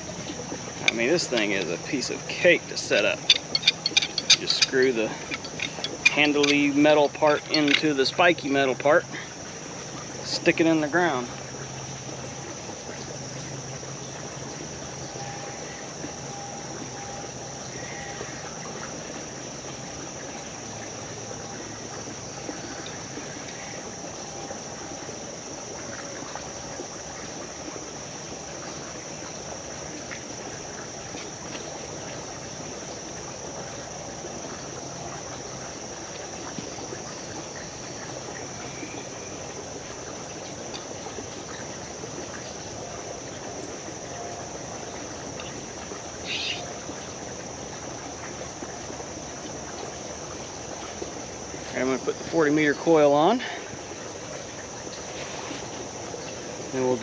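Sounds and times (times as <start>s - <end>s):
creek water rushing: 0.0s - 57.0s.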